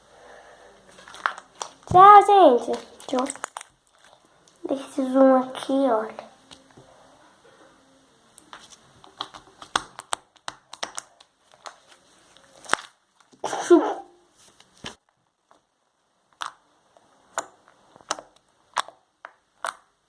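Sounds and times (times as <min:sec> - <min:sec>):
slime squelch: 0:00.9 - 0:06.7.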